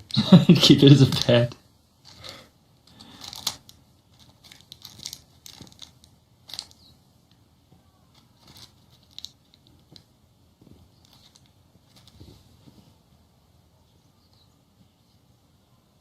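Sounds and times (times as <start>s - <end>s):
clicks and rustles of handling: 1.0s - 13.0s.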